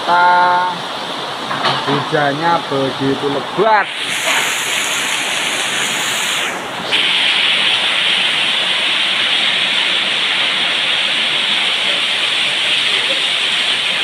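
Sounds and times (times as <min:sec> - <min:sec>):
heavy rain pouring: 0:00.0 - 0:14.0.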